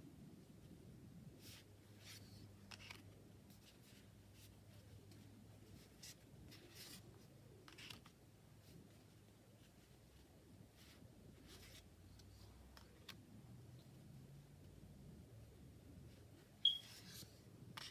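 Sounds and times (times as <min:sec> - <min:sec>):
cards rustling and clicking: 0:02.0 - 0:04.0, 0:05.0 - 0:08.2.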